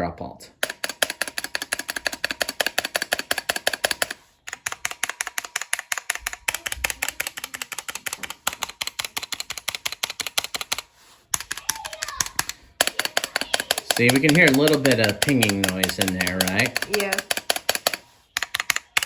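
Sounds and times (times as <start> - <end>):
mechanical keyboard typing: 0.6 - 19.0
spacebar pinging: 11.4 - 19.0.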